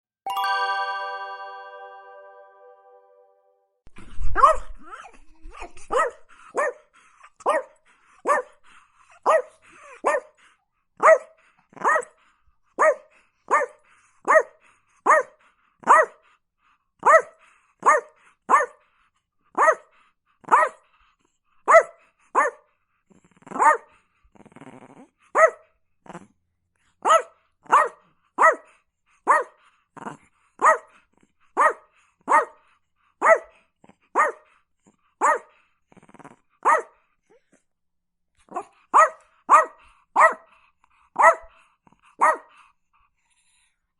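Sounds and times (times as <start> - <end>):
dog growling: 23.1 - 23.6, 24.3 - 25.2, 26.0 - 26.4, 29.9 - 30.3, 35.9 - 36.5.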